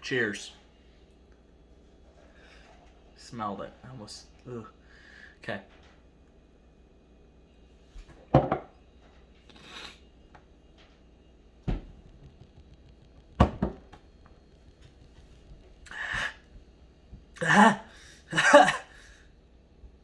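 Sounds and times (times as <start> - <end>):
cup knocking on a table: 8.3 - 8.7, 11.7 - 14.0.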